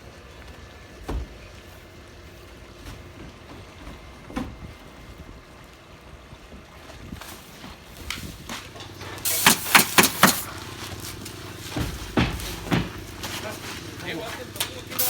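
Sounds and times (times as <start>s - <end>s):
outdoor background noise: 0.0s - 15.0s
knocks on shingle roof: 11.7s - 13.4s.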